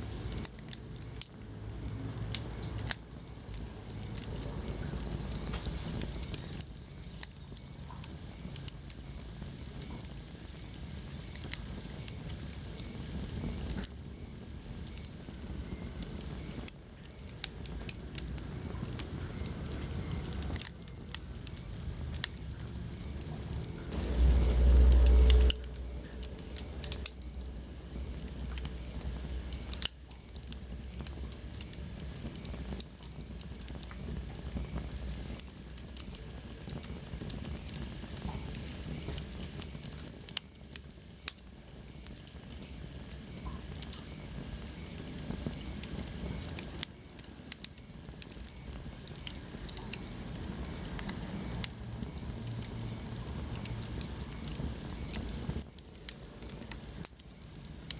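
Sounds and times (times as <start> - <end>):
low rumble of flames: 0.0 - 57.9
wood fire crackling and popping: 0.0 - 57.9.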